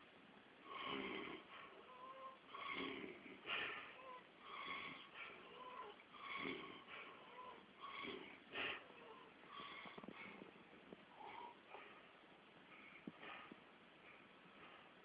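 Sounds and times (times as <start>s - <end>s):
man snoring: 0.7s - 1.5s, 2.5s - 3.6s, 4.4s - 6.9s, 7.8s - 9.2s
man snorting: 2.5s - 10.4s.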